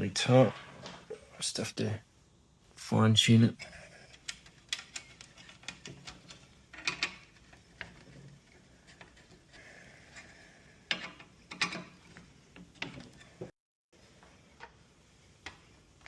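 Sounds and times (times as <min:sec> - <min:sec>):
handling plastic and metal parts: 0:03.7 - 0:09.5.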